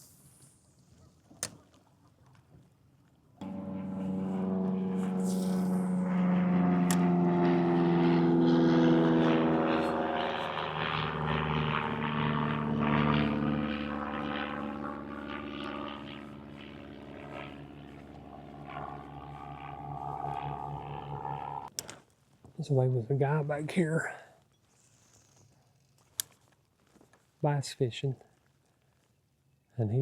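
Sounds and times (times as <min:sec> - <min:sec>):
engine drone passing by: 0:03.4 - 0:21.7.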